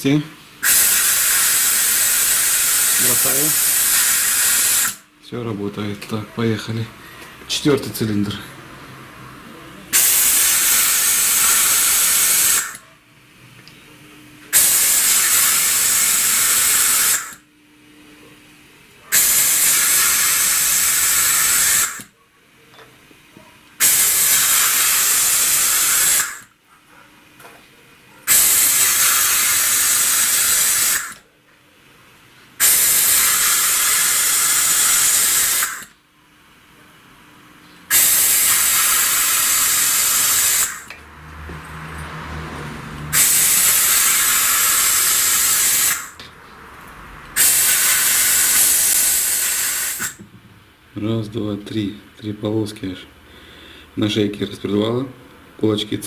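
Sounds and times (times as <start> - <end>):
air blow gun hissing: 0.6 - 5.1, 9.9 - 12.8, 14.5 - 17.4, 19.1 - 22.1, 23.8 - 26.5, 28.3 - 31.2, 32.6 - 35.9, 37.9 - 40.9, 43.1 - 46.2, 47.4 - 50.2.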